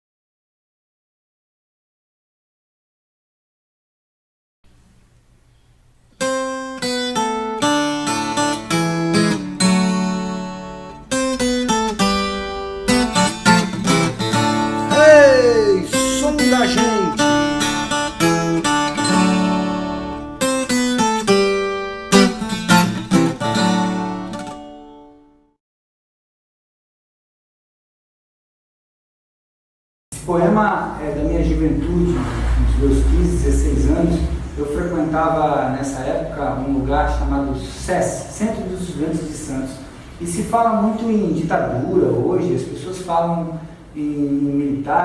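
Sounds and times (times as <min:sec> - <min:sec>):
solo acoustic guitar: 0:04.7 - 0:25.5.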